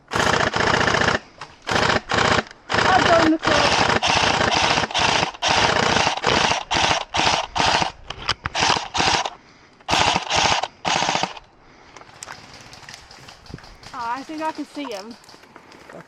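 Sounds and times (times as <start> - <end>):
airsoft rifle bursts: 0.1 - 11.4.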